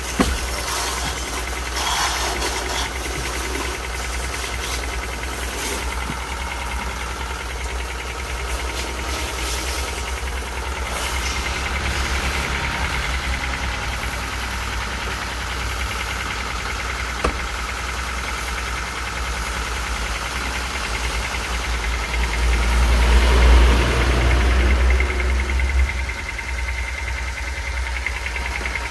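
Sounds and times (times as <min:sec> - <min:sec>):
car engine running: 0:00.0 - 0:28.9.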